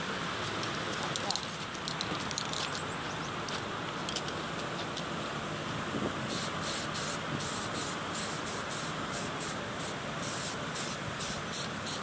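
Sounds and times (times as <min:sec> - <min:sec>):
wind noise: 0:05.8 - 0:06.4
aerosol can spraying: 0:06.3 - 0:12.0.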